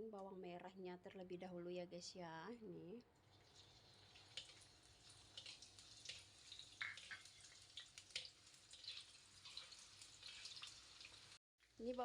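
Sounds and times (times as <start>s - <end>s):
shallots frying in hot oil: 3.2s - 12.0s.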